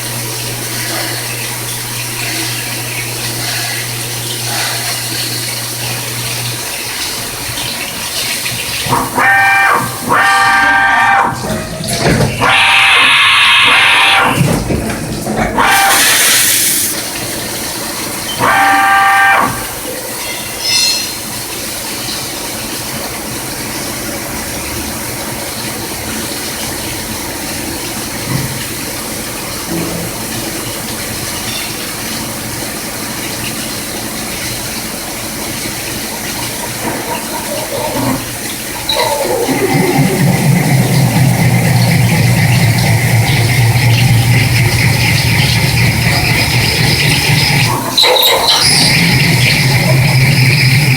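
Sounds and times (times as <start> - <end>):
machine humming and whining: 0.0 - 20.5, 37.7 - 50.9
loud high-pitched whine: 15.6 - 17.0, 18.4 - 21.2, 38.8 - 50.9.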